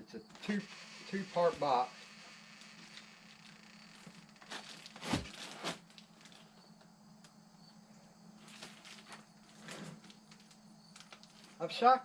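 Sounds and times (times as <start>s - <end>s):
steady low hum: 0.0s - 11.8s
cardboard box scraping: 4.5s - 5.9s.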